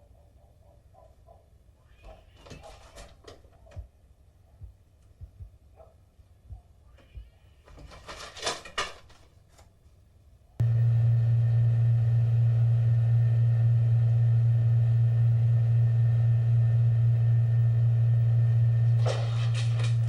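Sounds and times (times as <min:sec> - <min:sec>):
loud steady low hum: 0:10.6 - 0:20.0.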